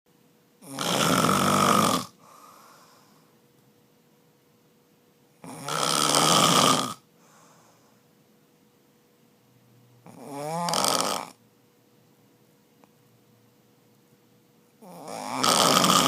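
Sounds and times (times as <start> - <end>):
man snoring loudly: 0.6 - 2.2, 5.4 - 7.0, 10.0 - 11.4, 14.8 - 16.0.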